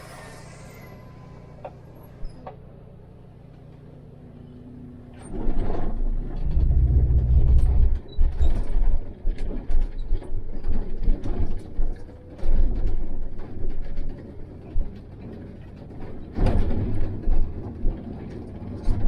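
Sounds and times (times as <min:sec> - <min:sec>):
heavy vehicle humming: 0:00.0 - 0:09.5
loud deep rumble: 0:04.5 - 0:09.0
rattles knocks and creaks: 0:05.2 - 0:19.0.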